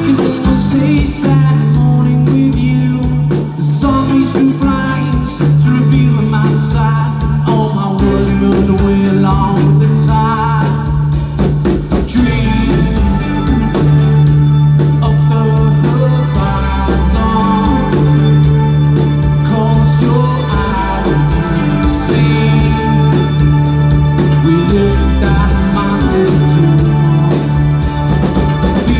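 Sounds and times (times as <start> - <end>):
bass line: 0.0 - 28.9
drum kit: 0.0 - 28.9
electric guitars: 12.0 - 28.9.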